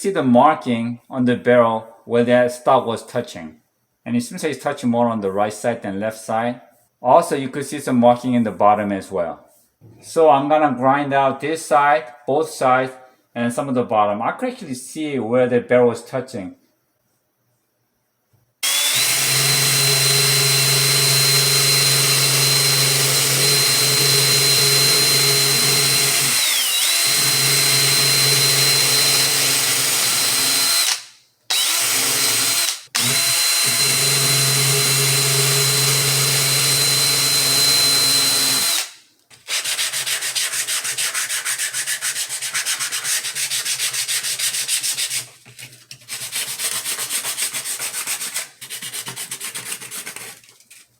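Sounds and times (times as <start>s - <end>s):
power tool grinding whine: 18.6s - 39.0s.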